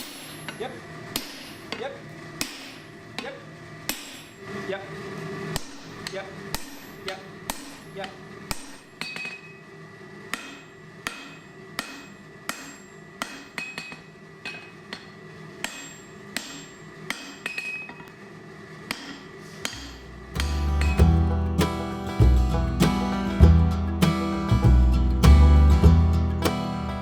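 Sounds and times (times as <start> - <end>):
hammer striking steel on anvil: 10.3 - 17.9
low hum: 19.8 - 27.0
acoustic guitar music: 20.1 - 27.0.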